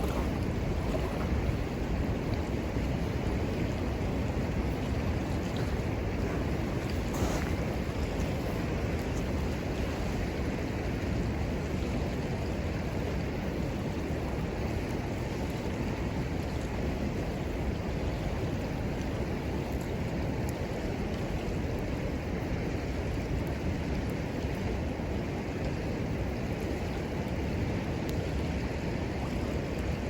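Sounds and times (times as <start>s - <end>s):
river rushing: 0.0s - 17.0s.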